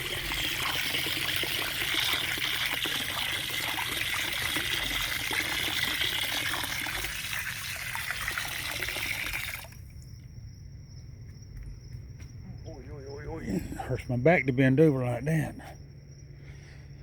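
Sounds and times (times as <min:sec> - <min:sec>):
water trickling: 0:00.0 - 0:10.2.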